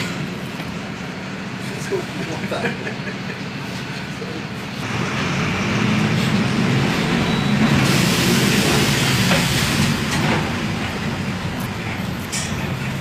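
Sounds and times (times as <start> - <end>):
diesel engine humming: 0.0 - 13.0
loud rushing hiss: 5.0 - 11.2.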